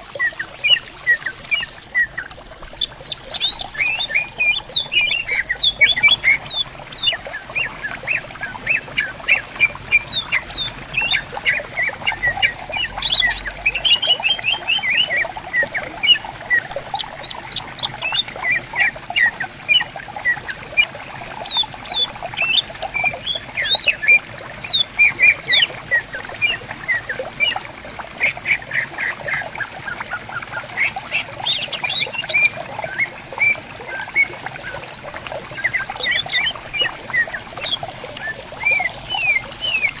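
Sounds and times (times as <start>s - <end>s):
birds whistling and chattering: 0.0s - 40.0s.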